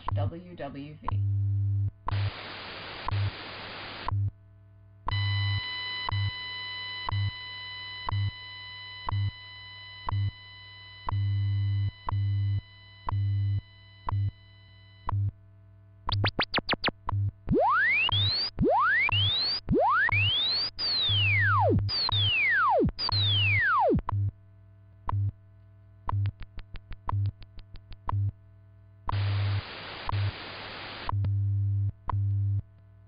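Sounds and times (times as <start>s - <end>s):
radio hiss: 2.1s - 4.1s, 29.2s - 31.1s
time signal ticks: 14.0s - 14.3s, 16.1s - 24.3s, 26.1s - 28.3s
chord of steady high tones: 17.5s - 24.0s.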